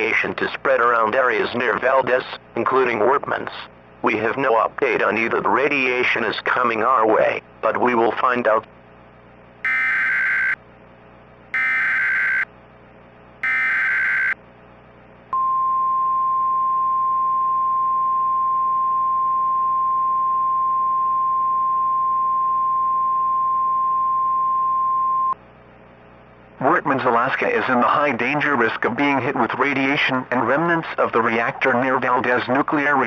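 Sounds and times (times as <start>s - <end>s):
screechy digital data tones: 9.7s - 10.6s, 11.6s - 12.5s, 13.4s - 14.4s
high attention tone: 11.6s - 12.4s, 13.4s - 14.4s.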